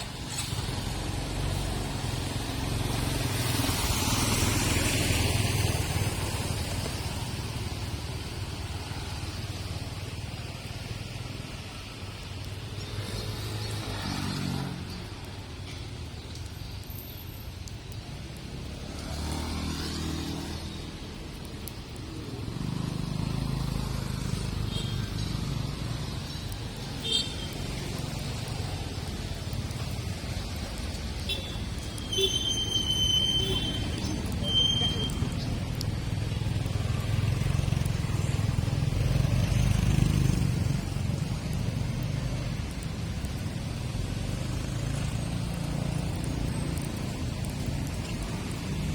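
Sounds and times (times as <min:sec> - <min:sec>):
low traffic rumble: 0:00.0 - 0:48.9
vehicles passing on wet road: 0:00.0 - 0:48.9
vehicle engine passing: 0:18.7 - 0:20.9, 0:33.8 - 0:48.9.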